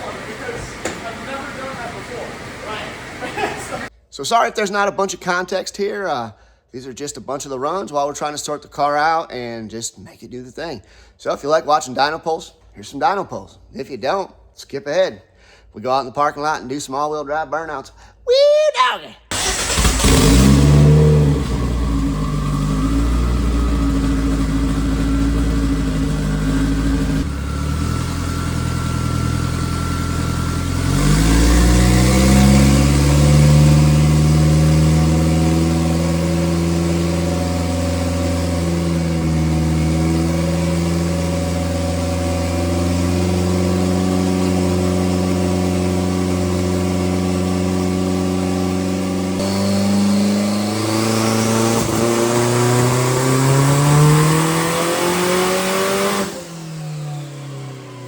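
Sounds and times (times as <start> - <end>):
race car engine revving: 19.3 - 58.0.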